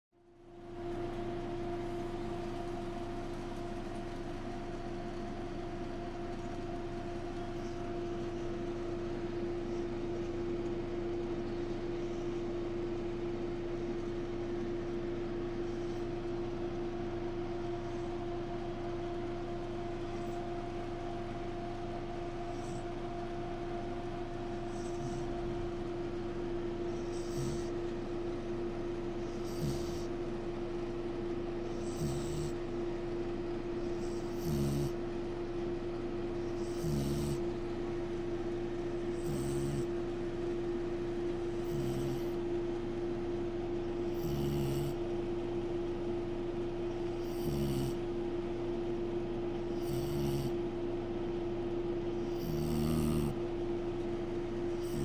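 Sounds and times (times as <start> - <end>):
steady hum: 0.2 - 55.0
person snoring: 27.0 - 27.7, 29.4 - 30.1, 31.8 - 32.6, 33.9 - 35.0, 36.5 - 37.4, 39.1 - 39.9, 41.6 - 42.4, 44.1 - 45.0, 47.2 - 48.0, 49.7 - 50.5, 52.3 - 53.4, 54.8 - 55.0.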